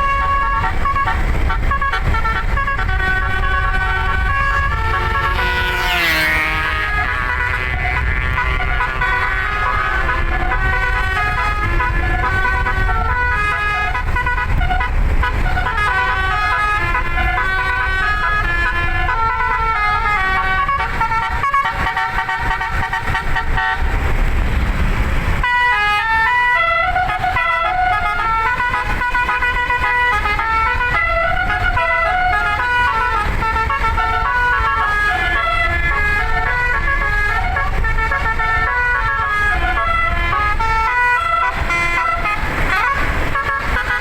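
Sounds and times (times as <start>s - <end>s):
steady low rumble: 0.0s - 5.7s
musical air horn playing a tune: 0.0s - 24.0s, 25.4s - 44.0s.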